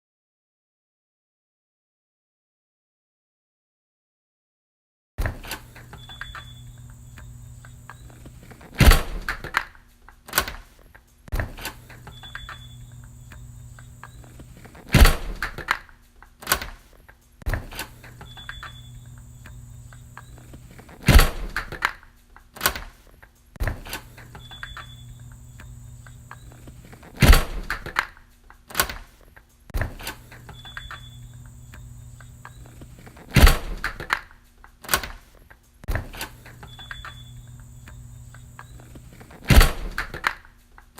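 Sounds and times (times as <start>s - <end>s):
low steady hum: 5.7s - 9.4s, 11.8s - 15.6s, 18.0s - 21.7s, 24.1s - 27.8s, 30.2s - 33.9s, 36.3s - 40.1s
door closing with thunk: 8.7s - 9.4s, 14.9s - 15.6s, 21.0s - 21.7s, 27.1s - 27.8s, 33.3s - 34.0s, 39.4s - 40.2s.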